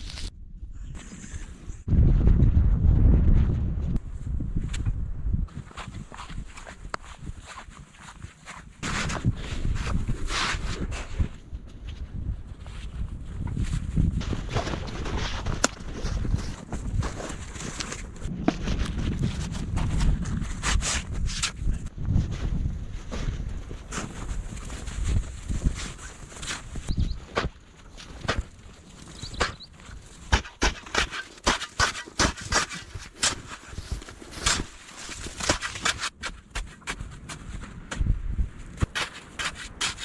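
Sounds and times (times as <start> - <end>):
crackles: 0.0 - 1.9, 14.2 - 36.6
wind buffeting microphone: 0.5 - 27.6, 36.8 - 40.0
footsteps crunching through snow: 5.5 - 11.3.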